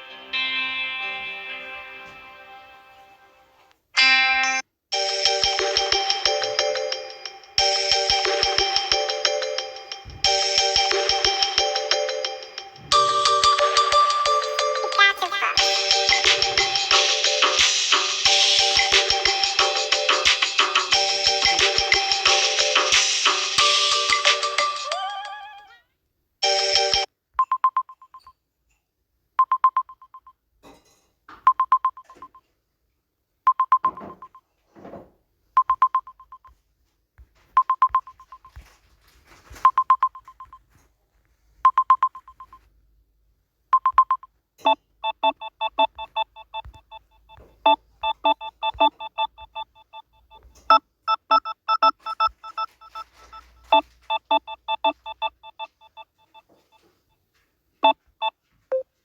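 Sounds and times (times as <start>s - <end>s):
rapid multi-pitch ringtone beeps: 5.0s - 25.0s, 43.9s - 56.9s
electronic ringtone tone: 5.0s - 25.7s, 26.4s - 28.0s, 37.7s - 38.6s, 39.7s - 40.6s, 41.7s - 42.6s, 43.8s - 56.9s.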